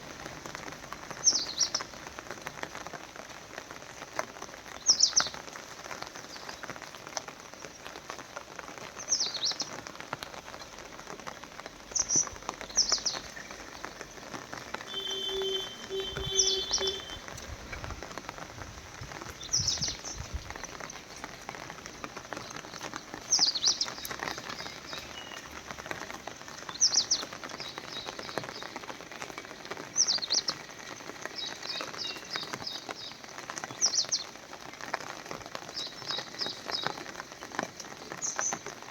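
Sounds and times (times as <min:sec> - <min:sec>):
bird calling: 0:11.9 - 0:17.3.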